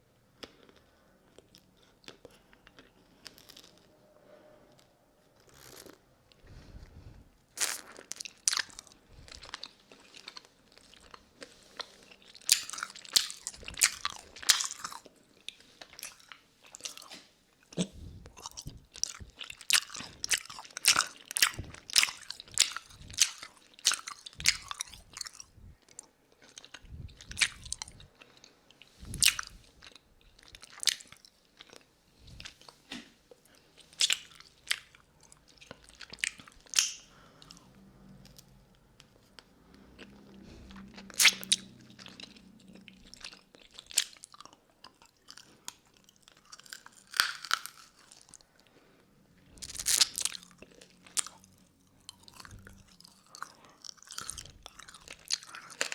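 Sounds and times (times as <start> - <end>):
lollipop being sucked and licked: 5.4 - 6.0, 7.5 - 9.5, 40.7 - 41.8, 49.6 - 50.4.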